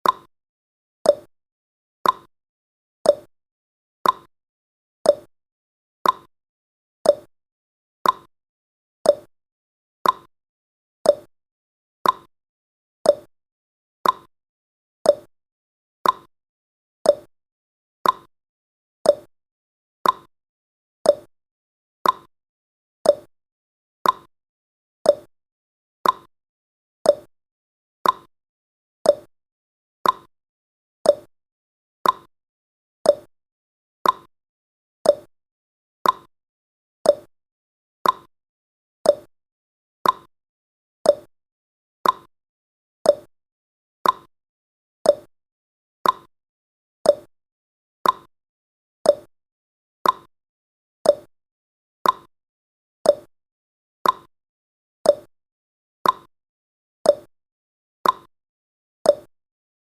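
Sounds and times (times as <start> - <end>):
timer ticking: 0.0 - 0.3, 1.1 - 1.3, 2.0 - 2.3, 3.1 - 3.3, 4.0 - 4.3, 5.1 - 5.3, 6.0 - 6.3, 7.1 - 7.3, 8.0 - 8.3, 9.1 - 9.3, 10.0 - 10.3, 11.1 - 11.3, 12.0 - 12.3, 13.1 - 13.3, 14.0 - 14.3, 15.1 - 15.3, 16.0 - 16.3, 17.1 - 17.3, 18.0 - 18.3, 19.1 - 19.3, 20.0 - 20.3, 21.1 - 21.3, 22.0 - 22.3, 23.0 - 23.3, 24.0 - 24.3, 25.1 - 25.3, 26.0 - 26.3, 27.1 - 27.3, 28.0 - 28.3, 29.1 - 29.3, 30.0 - 30.3, 31.1 - 31.3, 32.0 - 32.3, 33.1 - 33.3, 34.0 - 34.3, 35.0 - 35.3, 36.0 - 36.3, 37.1 - 37.3, 38.0 - 38.3, 39.1 - 39.3, 40.0 - 40.3, 41.1 - 41.3, 42.0 - 42.3, 43.1 - 43.3, 44.0 - 44.3, 45.1 - 45.3, 46.0 - 46.3, 47.1 - 47.3, 48.0 - 48.3, 49.1 - 49.3, 50.0 - 50.3, 51.1 - 51.3, 52.0 - 52.3, 53.1 - 53.3, 54.0 - 54.3, 55.1 - 55.3, 56.0 - 56.3, 57.1 - 57.3, 58.0 - 58.3, 59.1 - 59.3.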